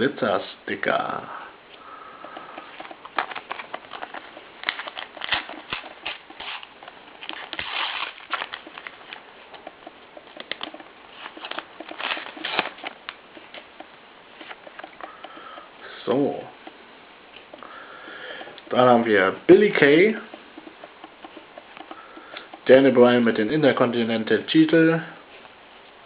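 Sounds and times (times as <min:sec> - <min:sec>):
paper packet crinkling: 0:02.6 - 0:13.7
paper tearing: 0:03.3 - 0:08.9, 0:11.2 - 0:13.0.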